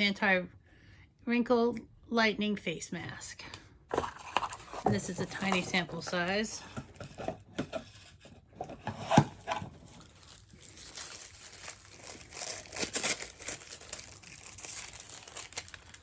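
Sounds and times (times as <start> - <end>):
packaging crinkling and rustling: 3.9 - 16.0.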